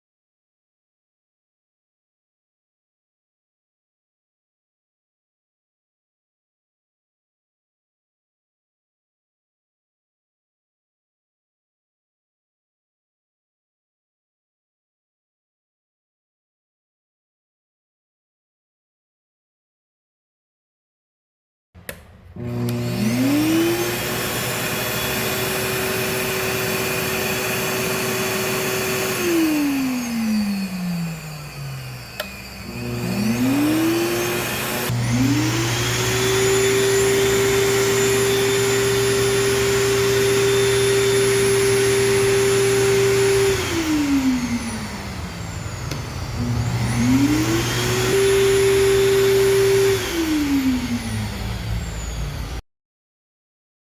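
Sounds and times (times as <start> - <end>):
blower whining: 21.8 - 52.6.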